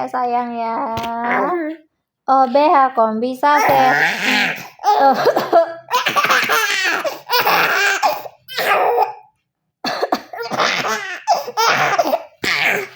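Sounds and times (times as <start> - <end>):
baby laughing: 3.6 - 9.2, 10.4 - 12.9
woman fake coughing: 4.9 - 6.7, 9.9 - 12.2.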